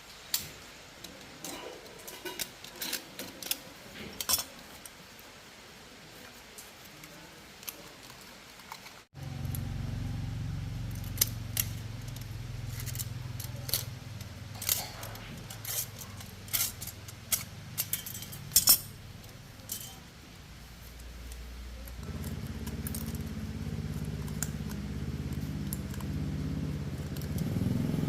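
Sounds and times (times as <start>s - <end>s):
low steady hum: 9.2s - 28.0s
metallic tool clicks and clinks: 14.6s - 18.9s, 19.7s - 20.0s.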